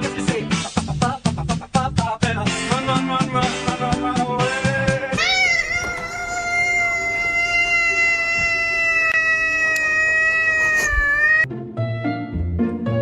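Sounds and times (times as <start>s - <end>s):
cat yowling: 5.2s - 11.5s.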